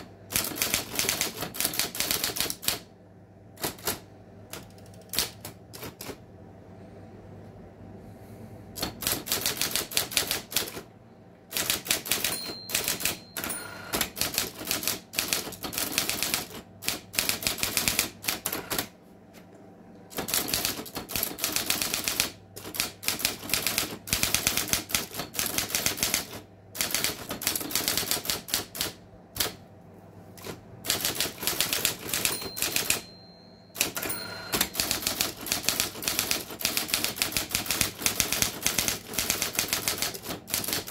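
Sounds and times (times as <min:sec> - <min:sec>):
typewriter motor hum: 0:00.0 - 0:02.9, 0:03.6 - 0:06.2, 0:08.8 - 0:10.9, 0:11.5 - 0:18.9, 0:20.1 - 0:29.6, 0:30.4 - 0:33.0, 0:33.8 - 0:40.9
typewriter key strikes: 0:08.8 - 0:10.8, 0:11.6 - 0:18.8, 0:30.4 - 0:33.2, 0:33.8 - 0:40.9.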